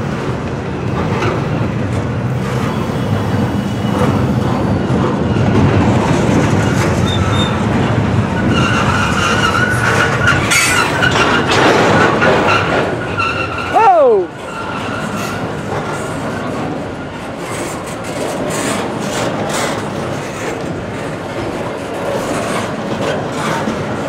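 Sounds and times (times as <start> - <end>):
train wheels rumbling on rails: 0.0 - 24.0
high wheel squeal: 2.5 - 15.6
clicks over rail joints: 3.4 - 13.7.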